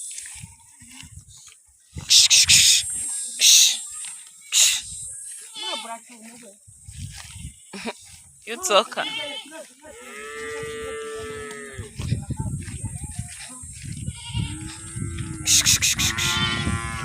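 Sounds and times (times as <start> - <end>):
cows mooing: 9.9 - 11.9, 14.2 - 17.0
low rumbling microphone noise: 10.5 - 17.0.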